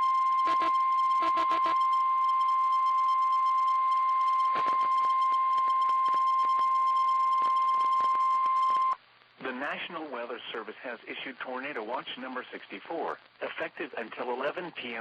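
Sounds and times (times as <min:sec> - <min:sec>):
steady loud alarm tone: 0:00.0 - 0:09.0
radio crackle clicks: 0:03.6 - 0:09.5.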